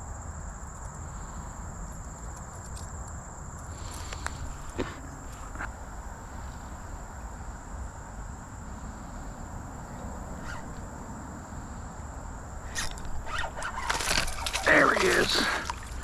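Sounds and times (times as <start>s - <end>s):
insects trilling: 0.0s - 16.0s
faint clicks: 1.9s - 5.7s.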